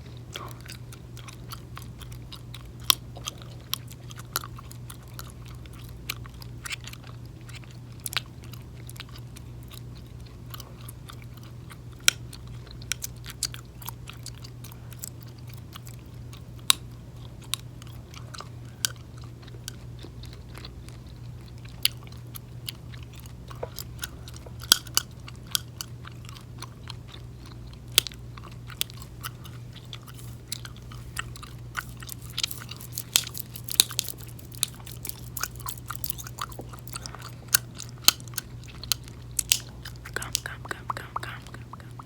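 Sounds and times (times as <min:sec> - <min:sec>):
gum chewing mouth clicks: 0:00.1 - 0:42.0.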